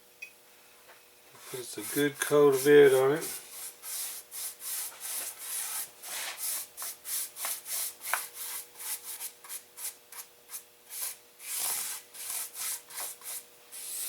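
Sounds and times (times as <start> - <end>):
cloth rubbing stain on wood: 1.4 - 7.8.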